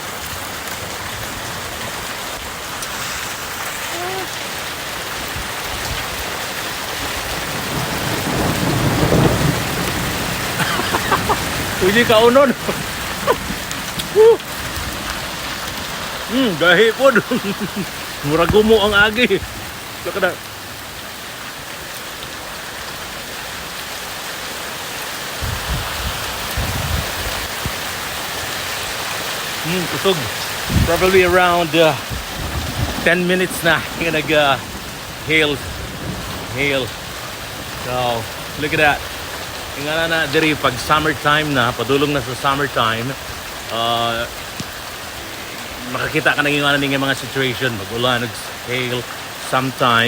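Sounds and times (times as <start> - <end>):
hail and rain pelting down: 0.0 - 50.0
low thumps: 18.3 - 19.2.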